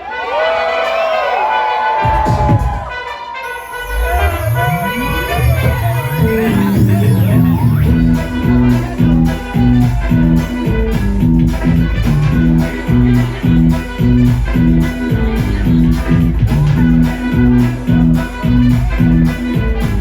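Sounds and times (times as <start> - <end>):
electronic dance music: 2.0 - 20.0.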